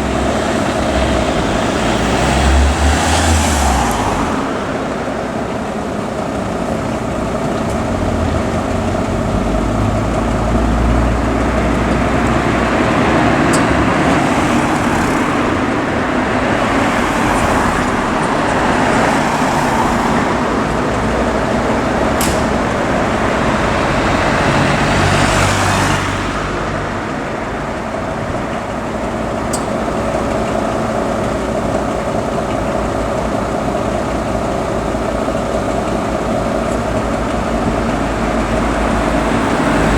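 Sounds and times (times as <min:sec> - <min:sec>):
road noise: 0:00.0 - 0:39.9
vehicle engine hum: 0:00.0 - 0:39.9.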